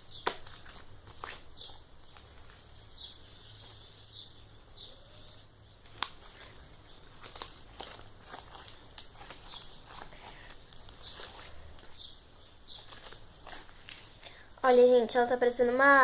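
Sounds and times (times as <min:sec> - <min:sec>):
slime being stirred: 0:00.0 - 0:03.6, 0:05.8 - 0:12.1, 0:12.7 - 0:14.3.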